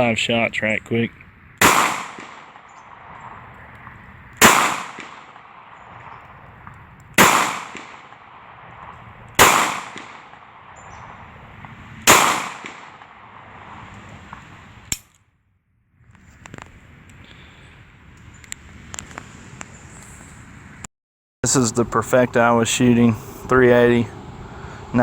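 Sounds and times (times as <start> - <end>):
pistol shots: 1.6 - 15.0
sharp click: 14.9 - 15.2.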